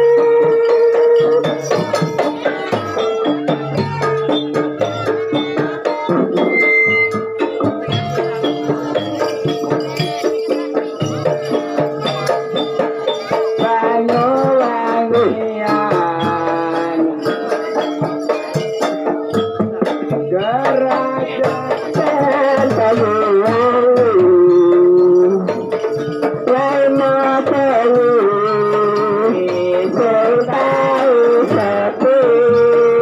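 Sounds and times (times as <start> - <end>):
wavering melody line: 0.0 - 15.2
drum and percussion rhythm: 0.0 - 33.0.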